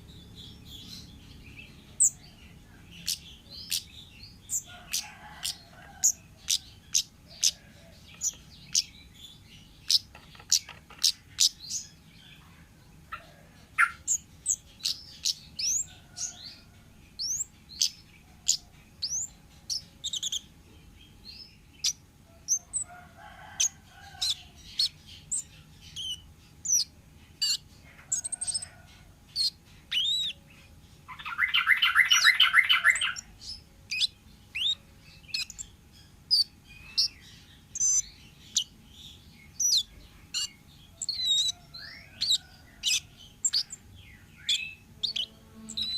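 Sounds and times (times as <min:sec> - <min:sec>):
bird harsh buzzy chatter: 0:09.8 - 0:12.5, 0:44.5 - 0:45.9
bird chirping and whistling: 0:29.4 - 0:30.4, 0:31.1 - 0:33.3, 0:33.9 - 0:35.7, 0:37.8 - 0:38.7, 0:39.6 - 0:43.8.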